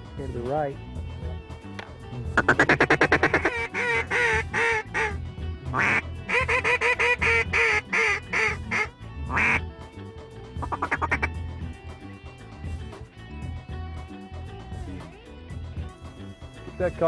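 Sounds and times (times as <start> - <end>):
background music: 0.0 - 17.0
duck call quacks: 2.4 - 9.6, 10.6 - 11.3.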